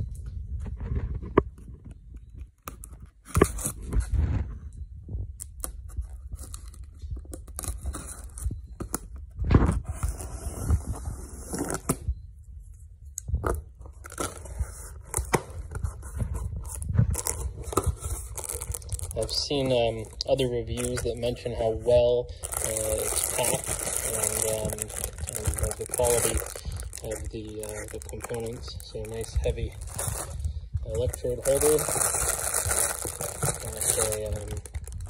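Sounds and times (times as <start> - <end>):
cardboard scraping and handling: 7.5 - 12.0, 14.0 - 35.0
packing tape tearing: 22.4 - 29.3, 30.9 - 34.9.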